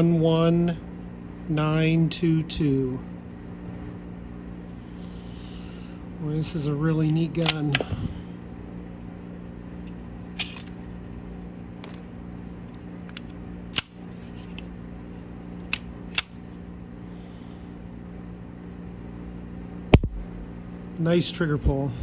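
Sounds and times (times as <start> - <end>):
steady low hum: 0.0 - 22.0
pistol metallic clicks: 7.1 - 7.9, 13.1 - 14.6, 15.6 - 16.5, 20.0 - 20.3.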